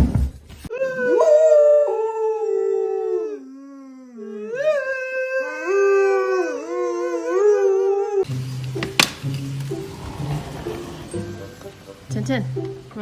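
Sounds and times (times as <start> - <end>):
dog howling: 0.7 - 8.3.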